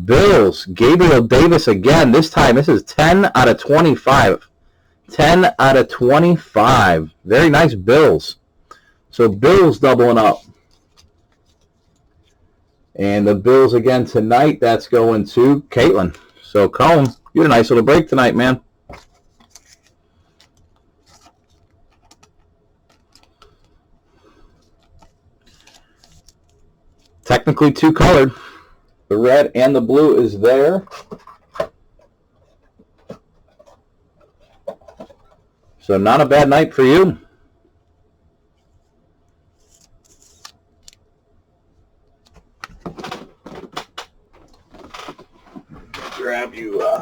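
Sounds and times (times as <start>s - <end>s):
trading cards clicking and rustling: 18.9s - 23.8s, 24.5s - 27.2s, 39.6s - 41.0s.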